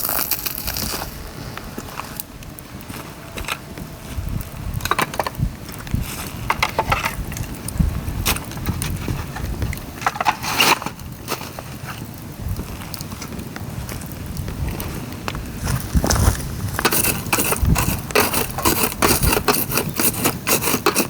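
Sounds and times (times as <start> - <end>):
bamboo cracking and snapping: 0.0 - 1.2.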